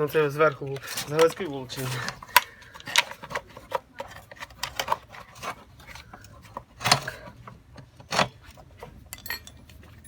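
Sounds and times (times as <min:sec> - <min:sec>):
metal tools clicking and clinking: 0:00.4 - 0:03.1, 0:09.1 - 0:10.0.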